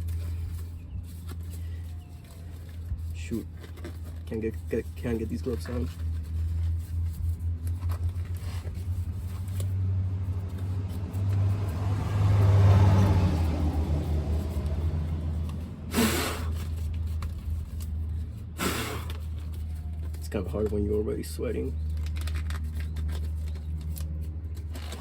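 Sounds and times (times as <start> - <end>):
steady low hum: 0.0 - 25.0
vehicle passing: 7.2 - 18.6.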